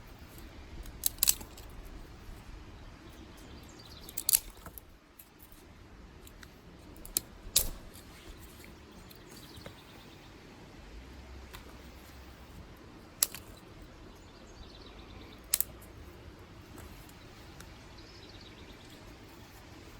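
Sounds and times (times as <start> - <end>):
twigs snapping: 0.3 - 1.9, 3.9 - 5.6, 6.3 - 9.8, 13.1 - 13.7, 15.4 - 17.8.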